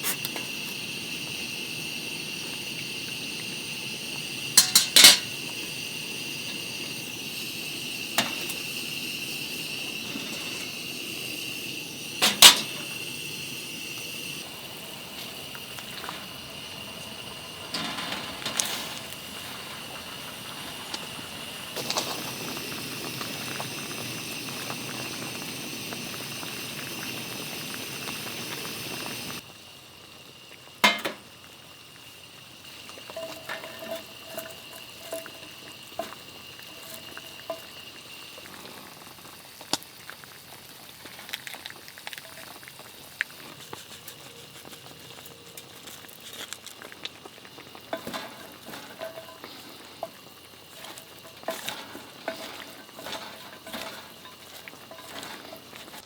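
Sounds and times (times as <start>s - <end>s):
steady background hiss: 0.0s - 56.0s
metal utensils and dishes clinking: 4.6s - 5.4s, 12.2s - 12.9s, 15.1s - 22.3s, 30.8s - 31.2s, 33.1s - 37.7s, 47.9s - 56.0s.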